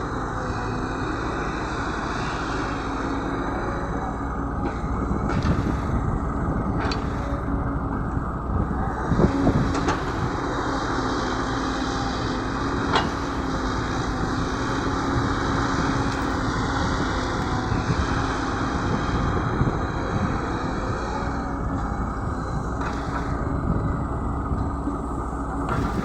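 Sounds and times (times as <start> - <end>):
heavy diesel machinery humming: 0.0 - 26.0.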